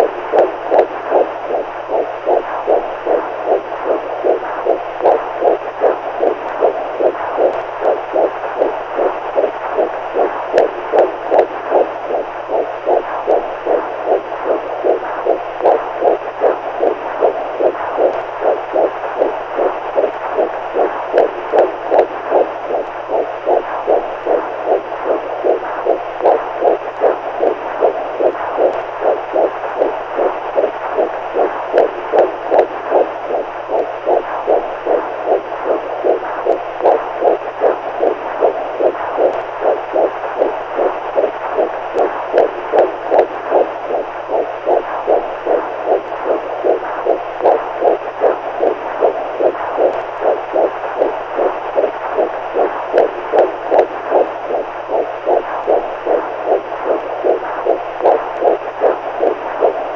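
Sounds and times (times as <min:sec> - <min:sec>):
constant hiss: 0:00.0 - 0:59.9
soft heartbeat pulses: 0:00.0 - 0:59.9.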